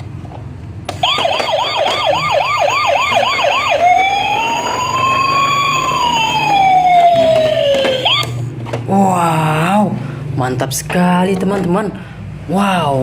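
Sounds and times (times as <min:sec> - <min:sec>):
toy fire truck siren: 0:00.9 - 0:08.5.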